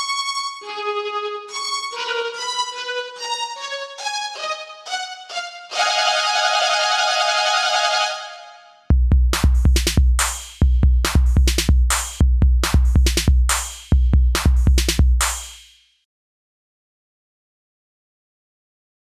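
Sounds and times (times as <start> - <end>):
violin music: 0.0 - 8.9
electronic drum machine beat: 9.3 - 15.7.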